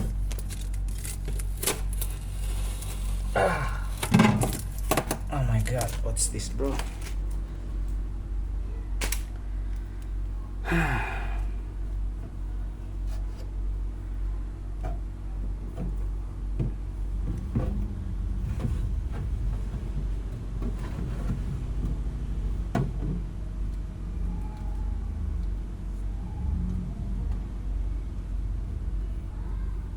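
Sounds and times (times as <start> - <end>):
packaging rustling: 0.0 - 7.3
low mechanical hum: 0.0 - 29.9.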